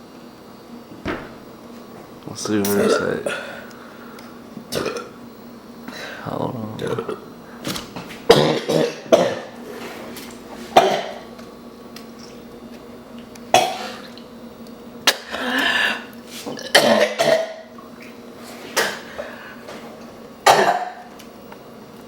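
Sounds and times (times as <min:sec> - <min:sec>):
woman coughing and retching: 0:02.7 - 0:03.4, 0:04.7 - 0:05.2, 0:08.3 - 0:09.6, 0:10.7 - 0:11.2, 0:13.5 - 0:14.0, 0:16.6 - 0:17.6, 0:20.4 - 0:21.0.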